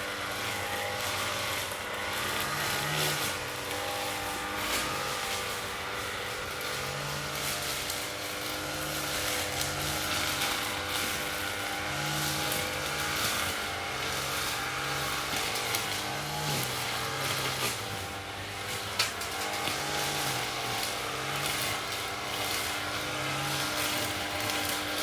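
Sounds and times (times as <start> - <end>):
lawn mower engine running: 0.0 - 25.0.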